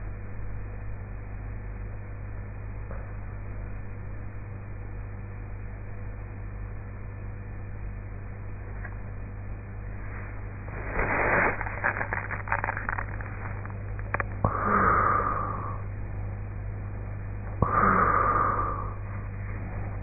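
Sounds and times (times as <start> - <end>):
steady low hum: 0.0 - 20.0
rough crackly breath: 10.2 - 15.9, 17.6 - 20.0
woman snoring: 14.5 - 15.8, 17.6 - 19.0.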